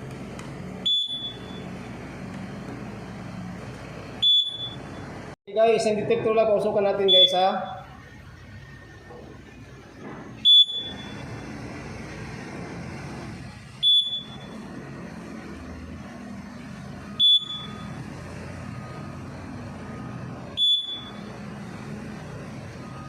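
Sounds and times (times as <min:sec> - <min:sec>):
short high beeps: 0:00.8 - 0:01.7, 0:04.2 - 0:05.0, 0:07.0 - 0:08.0, 0:10.4 - 0:11.2, 0:13.8 - 0:14.6, 0:17.1 - 0:18.0, 0:20.6 - 0:21.3.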